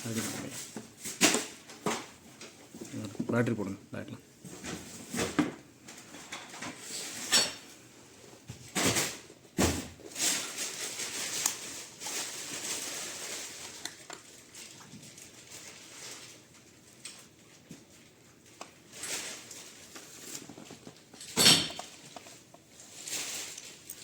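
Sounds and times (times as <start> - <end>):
rustling: 8.3 - 24.0.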